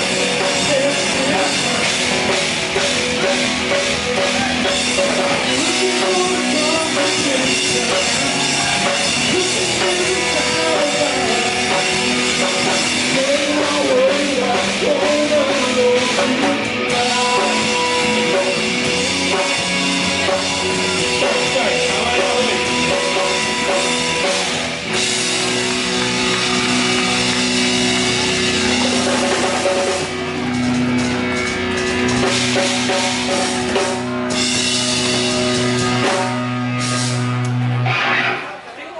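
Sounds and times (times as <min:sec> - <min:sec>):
person singing: 0:00.0 - 0:02.4, 0:04.2 - 0:24.5
rock band playing live: 0:00.0 - 0:38.9.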